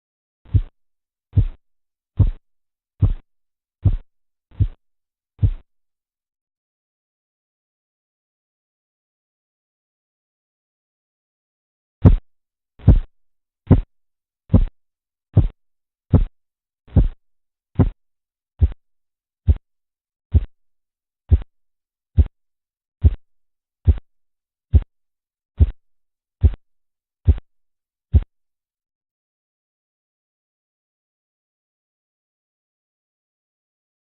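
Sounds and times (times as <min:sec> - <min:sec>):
low pulse thumps through stethoscope: 0:00.5 - 0:01.6, 0:02.2 - 0:02.4, 0:03.0 - 0:04.8, 0:05.4 - 0:05.7, 0:12.0 - 0:12.2, 0:12.8 - 0:13.1, 0:13.7 - 0:13.9, 0:14.5 - 0:14.8, 0:15.4 - 0:17.2, 0:17.8 - 0:18.0, 0:18.6 - 0:18.8, 0:19.5 - 0:19.7, 0:20.3 - 0:20.6, 0:21.2 - 0:21.5, 0:22.2 - 0:22.4, 0:23.0 - 0:23.3, 0:23.9 - 0:24.1, 0:24.7 - 0:24.9, 0:25.6 - 0:25.8, 0:26.4 - 0:26.6, 0:27.3 - 0:27.5, 0:28.1 - 0:28.3.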